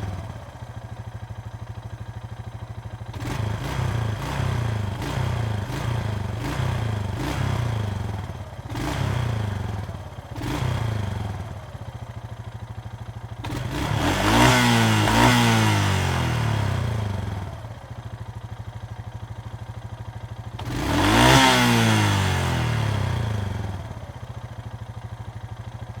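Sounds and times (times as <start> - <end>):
atv engine idling and revving: 0.0 - 26.0.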